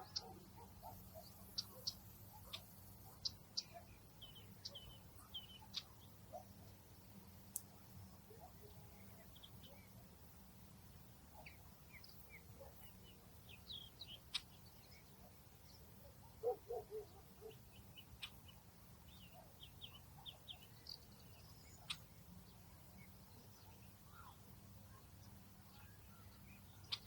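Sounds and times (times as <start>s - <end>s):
small birds chirping: 0.0s - 27.0s.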